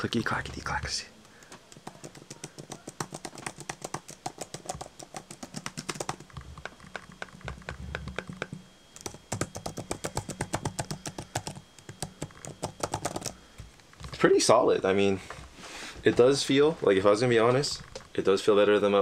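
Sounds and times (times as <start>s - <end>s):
rapid keyboard typing: 1.4s - 13.4s.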